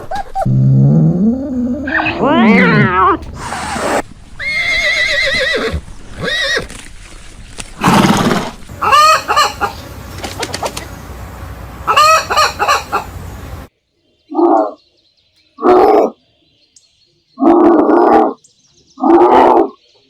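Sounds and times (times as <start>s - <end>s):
chickens clucking: 8.7s - 13.7s
chicken long wavering call: 8.8s - 9.8s, 11.8s - 13.7s.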